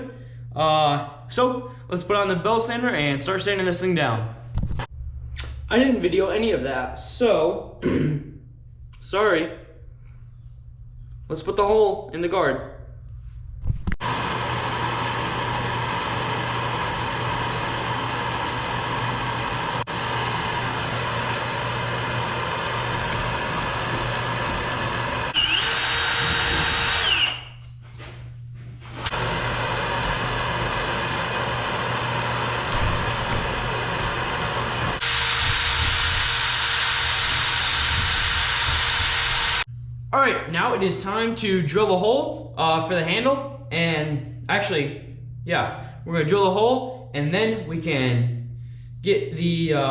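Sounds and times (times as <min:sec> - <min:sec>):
power drill boring through wood: 0:14.0 - 0:27.5, 0:29.0 - 0:39.7.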